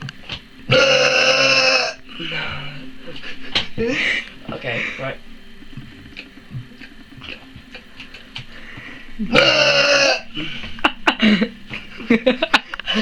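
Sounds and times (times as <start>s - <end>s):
person burping loudly: 0.7s - 2.0s, 9.2s - 10.6s.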